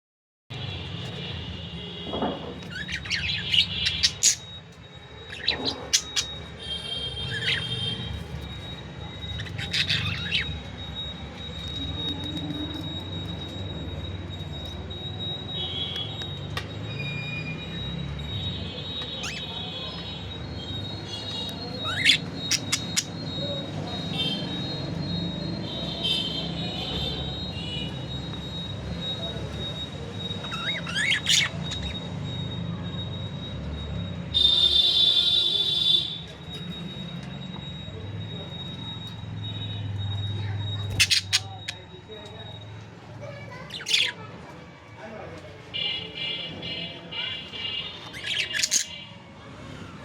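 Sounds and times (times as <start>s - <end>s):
budgerigar chirping: 2.6s - 4.6s, 5.2s - 6.5s, 9.1s - 11.2s, 19.1s - 19.7s, 20.5s - 23.4s, 30.2s - 32.0s, 40.1s - 41.9s, 47.7s - 49.0s.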